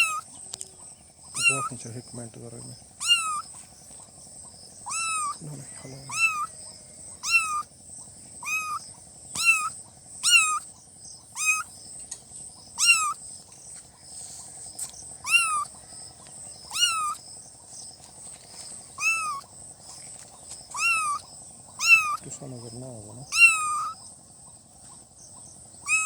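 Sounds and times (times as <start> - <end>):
kitten meowing: 0.0 - 0.3, 1.4 - 1.8, 3.0 - 3.5, 4.9 - 6.5, 7.2 - 7.7, 8.4 - 8.8, 9.4 - 10.7, 11.4 - 11.7, 12.8 - 13.2, 15.2 - 15.7, 16.7 - 17.2, 19.0 - 19.4, 20.7 - 22.2, 23.2 - 24.0.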